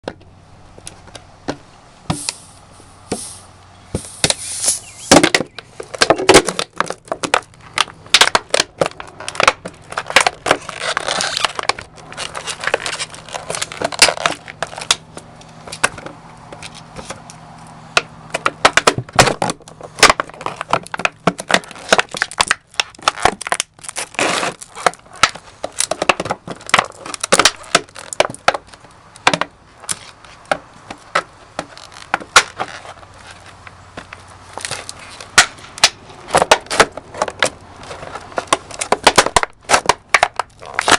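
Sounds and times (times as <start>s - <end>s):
boots crushing a plastic jar: 3.9s - 17.4s, 18.0s - 40.9s.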